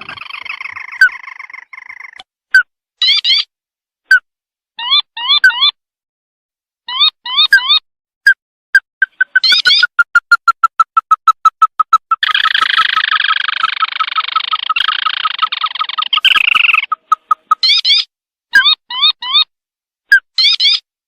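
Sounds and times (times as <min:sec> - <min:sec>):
bird chattering trill: 0:00.0 - 0:02.2, 0:09.0 - 0:19.5
recorded bird call: 0:00.0 - 0:03.5, 0:04.8 - 0:05.8, 0:06.8 - 0:07.8, 0:09.0 - 0:19.5, 0:20.1 - 0:20.9.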